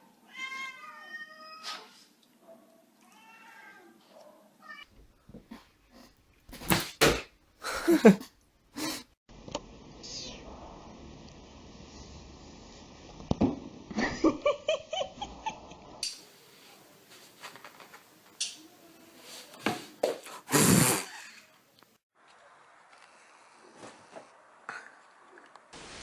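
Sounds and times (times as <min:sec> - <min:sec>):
cats meowing and yowling: 0:00.2 - 0:01.9, 0:03.0 - 0:04.0.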